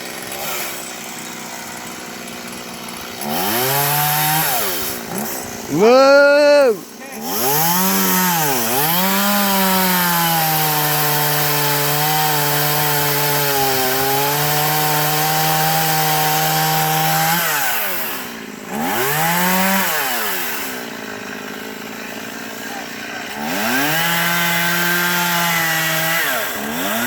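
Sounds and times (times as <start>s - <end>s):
chainsaw cutting wood: 0.0s - 27.0s.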